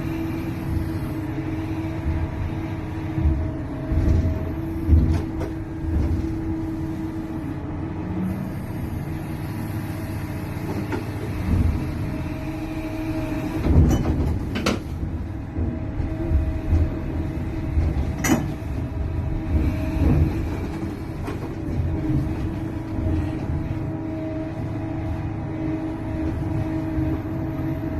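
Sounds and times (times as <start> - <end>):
excavator diesel engine running: 0.0 - 27.9.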